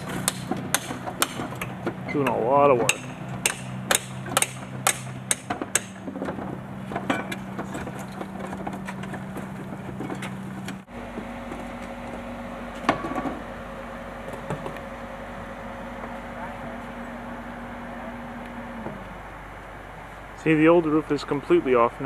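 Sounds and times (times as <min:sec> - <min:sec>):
steady low hum: 0:00.0 - 0:22.0
hammer striking roof: 0:00.2 - 0:01.8, 0:02.8 - 0:06.4.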